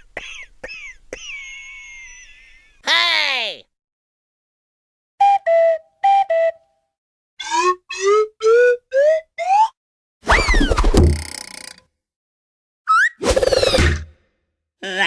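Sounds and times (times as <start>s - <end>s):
cartoon whistle slides: 7.4s - 10.9s, 12.9s - 14.0s.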